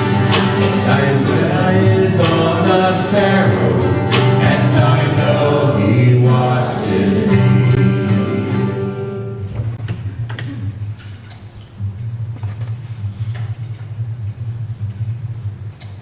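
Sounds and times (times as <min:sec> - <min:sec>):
country song with singing: 0:00.0 - 0:09.8.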